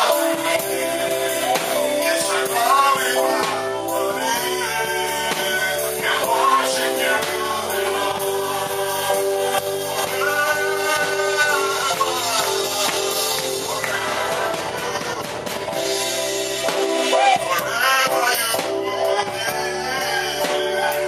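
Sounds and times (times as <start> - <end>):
gospel singing: 0.0 - 21.0
instrumental accompaniment: 0.0 - 21.0.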